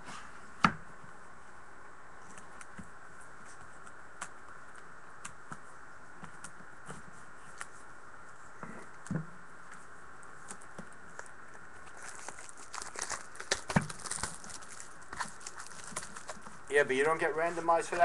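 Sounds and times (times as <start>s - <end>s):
steady background hiss: 0.0s - 18.0s
trading card packs being opened: 11.8s - 18.0s.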